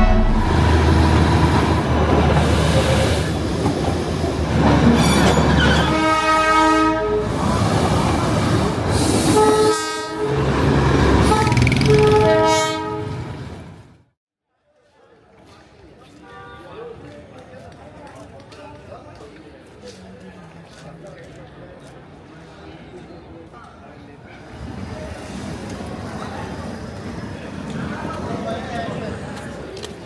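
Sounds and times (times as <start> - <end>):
train rumbling: 0.0 - 14.0, 24.4 - 30.0
train horn blasts: 5.8 - 7.4, 9.2 - 10.6, 11.2 - 13.4.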